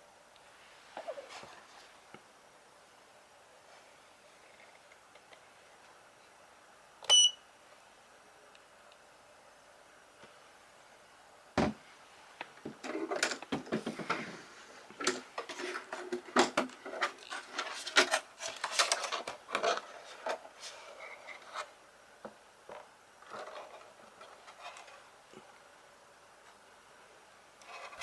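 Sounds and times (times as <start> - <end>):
plastic parts clicking and rattling: 12.8 - 13.9, 15.0 - 20.4.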